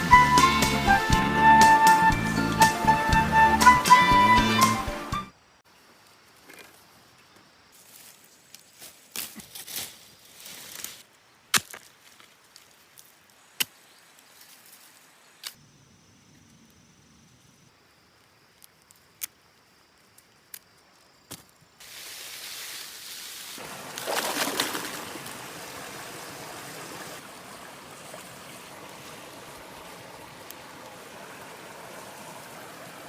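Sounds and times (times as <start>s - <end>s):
running stream water: 21.8s - 33.0s.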